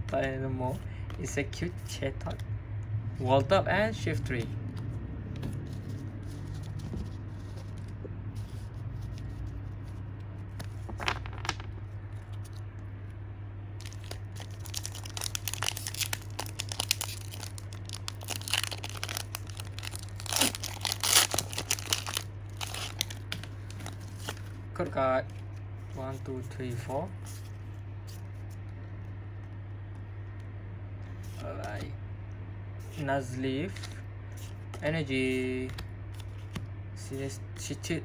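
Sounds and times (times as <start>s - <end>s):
steady low hum: 0.0s - 38.0s
foil wrapper crinkling and tearing: 13.8s - 24.5s.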